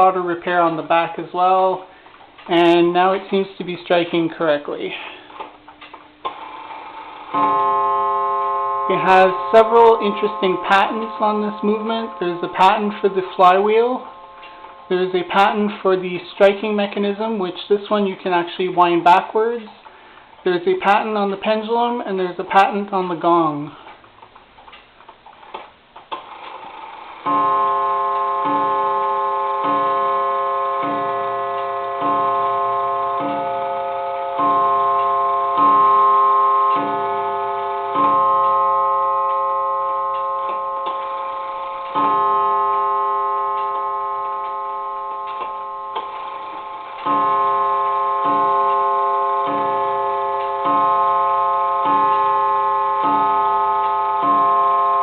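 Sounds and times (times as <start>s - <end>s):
clock striking on a gong: 7.3s - 15.6s, 27.2s - 55.0s
clock ticking: 8.9s - 15.6s, 27.3s - 55.0s.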